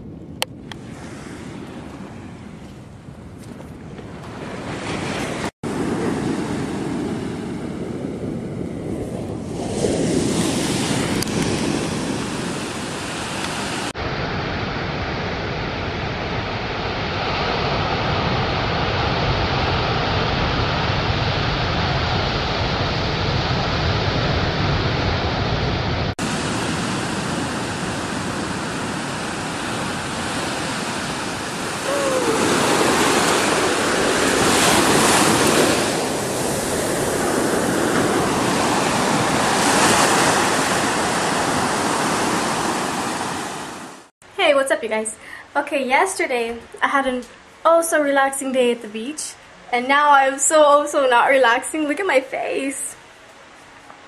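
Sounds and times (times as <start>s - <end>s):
ocean surf washing onto beach: 0.5s - 2.7s, 4.1s - 44.1s.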